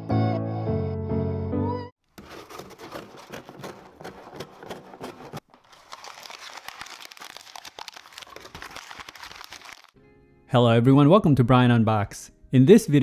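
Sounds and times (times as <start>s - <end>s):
packaging crinkling: 2.1s - 10.0s.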